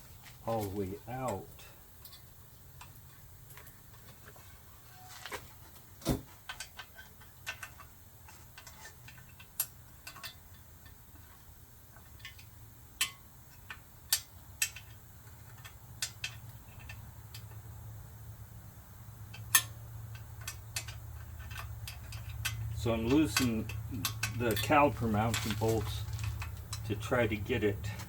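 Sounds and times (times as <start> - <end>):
hand tools clicking on metal: 19.3 - 28.0.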